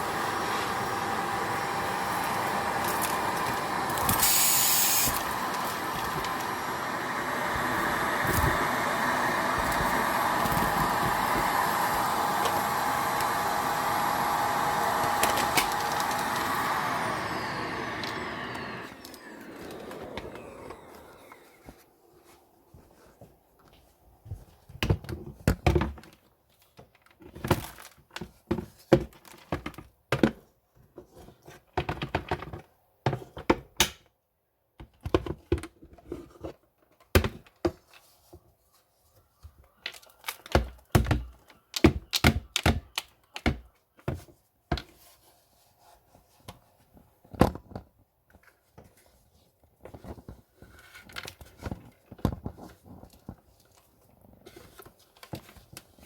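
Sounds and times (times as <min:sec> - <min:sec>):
rustling and scraping: 0:44.2 - 0:56.0.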